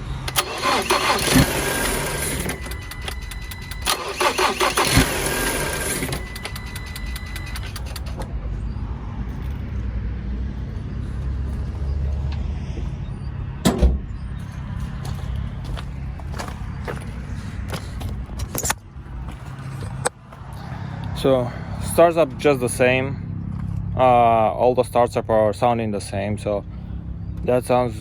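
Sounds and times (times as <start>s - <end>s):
engine idling: 0.0s - 12.9s
engine starter cranking: 0.2s - 8.3s
thump: 13.6s - 14.0s.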